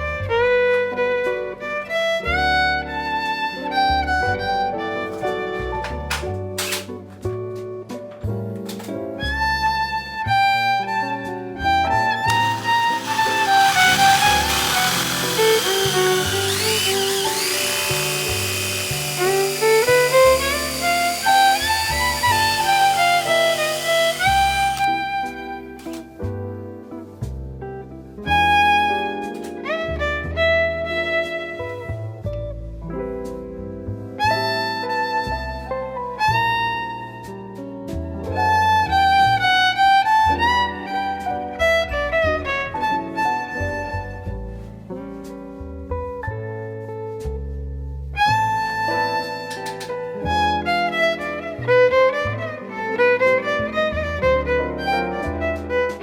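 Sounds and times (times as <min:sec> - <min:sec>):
instrumental music with bowed strings: 0:00.0 - 0:05.2, 0:08.6 - 0:26.0, 0:47.9 - 0:56.0.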